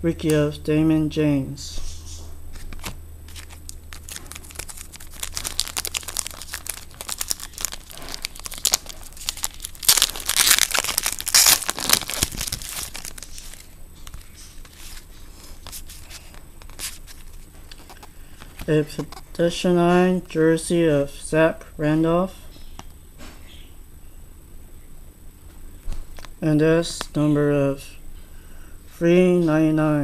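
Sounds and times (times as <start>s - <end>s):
wrapper crinkling and tearing: 2.7s - 18.2s.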